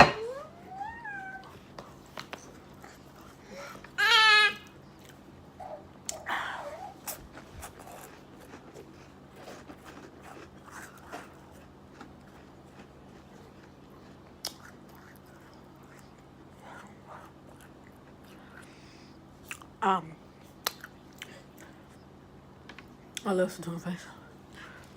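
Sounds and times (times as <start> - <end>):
person chewing crunchy food: 5.0 - 18.8.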